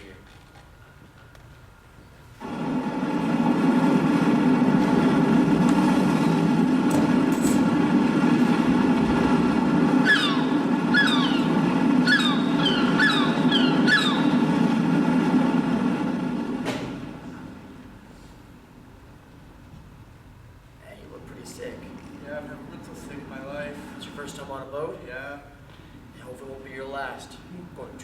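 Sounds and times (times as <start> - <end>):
boat engine drone: 2.4 - 18.1.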